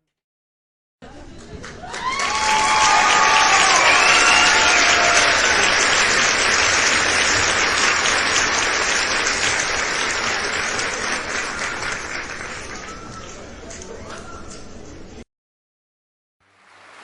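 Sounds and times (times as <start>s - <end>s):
crowd clapping: 1.3s - 13.8s, 16.4s - 17.0s
crowd shouts and whoops: 1.8s - 6.0s.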